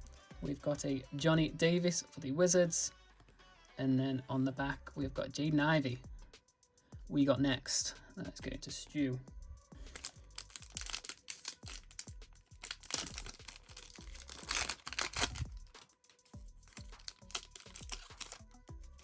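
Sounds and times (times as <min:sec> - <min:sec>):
background music: 0:00.0 - 0:19.0
wrapper crinkling and tearing: 0:09.8 - 0:18.5.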